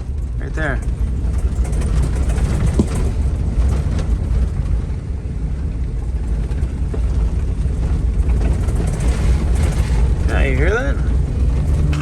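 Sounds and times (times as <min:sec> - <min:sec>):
engine and road rumble: 0:00.0 - 0:12.0.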